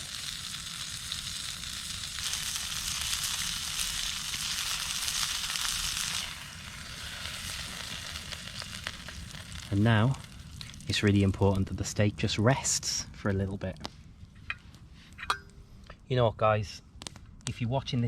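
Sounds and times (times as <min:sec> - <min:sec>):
steak sizzling in a pan: 0:00.0 - 0:10.8.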